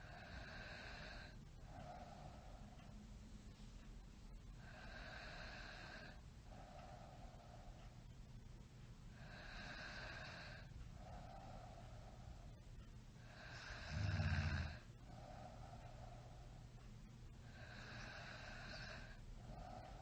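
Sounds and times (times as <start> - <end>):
person snoring: 13.3 - 15.2, 17.5 - 19.9.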